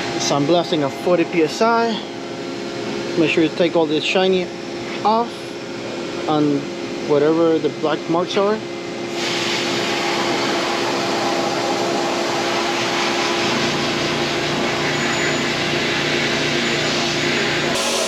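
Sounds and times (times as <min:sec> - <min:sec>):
sandblaster hissing: 0:17.7 - 0:18.0
steady hum: 0:17.7 - 0:18.0.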